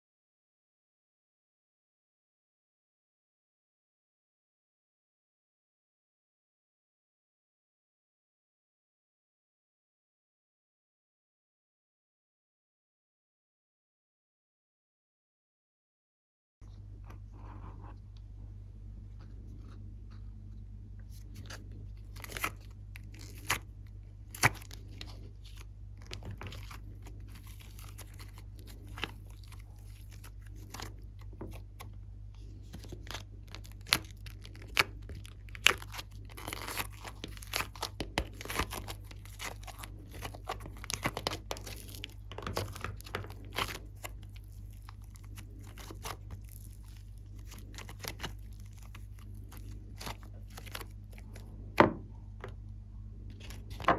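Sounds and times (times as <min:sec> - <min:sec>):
steady low hum: 0:16.6 - 0:53.9
sticky slime pops and crackles: 0:22.2 - 0:23.6, 0:24.3 - 0:31.9, 0:32.6 - 0:51.5.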